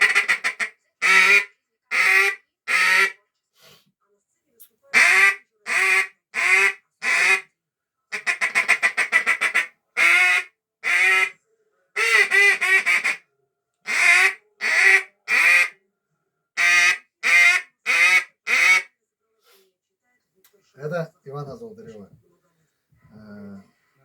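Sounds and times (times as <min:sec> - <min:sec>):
goose call honks and clucks: 0:00.0 - 0:03.2, 0:04.9 - 0:07.4, 0:08.1 - 0:11.4, 0:12.0 - 0:13.2, 0:13.9 - 0:15.7, 0:16.6 - 0:18.9.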